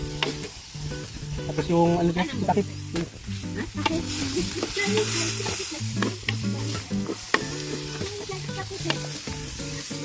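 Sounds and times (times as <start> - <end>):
background music: 0.0 - 10.0
chicken sizzling in a pan: 0.0 - 10.0
utensil clicking against pan: 0.1 - 0.6, 3.8 - 9.8.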